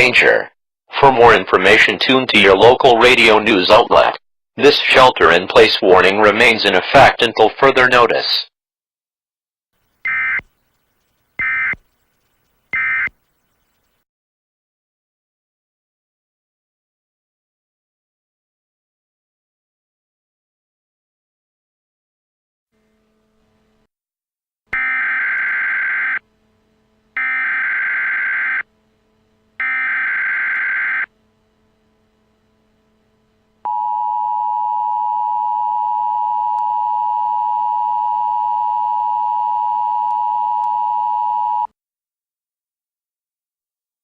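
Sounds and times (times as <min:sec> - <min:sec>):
data burst tones: 0:09.9 - 0:14.0
two-tone attention signal: 0:12.8 - 0:13.1, 0:33.7 - 0:41.7.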